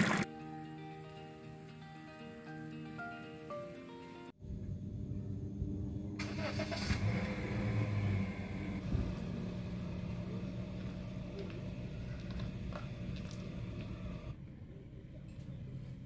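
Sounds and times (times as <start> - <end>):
vehicle engine humming: 4.4 - 16.0.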